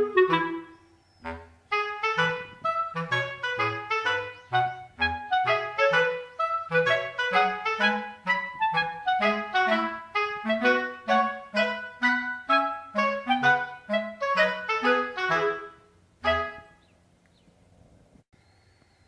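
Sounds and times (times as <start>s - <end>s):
background music melody: 0.0s - 17.2s.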